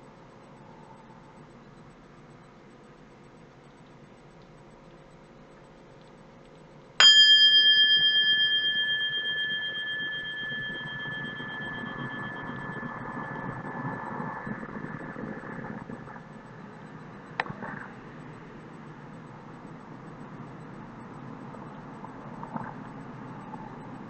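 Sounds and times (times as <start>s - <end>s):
metal bell ringing: 7.0s - 13.9s.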